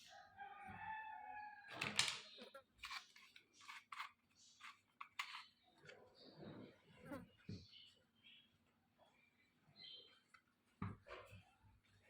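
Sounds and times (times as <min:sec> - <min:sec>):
plastic toy pieces clicking: 0:01.8 - 0:05.4.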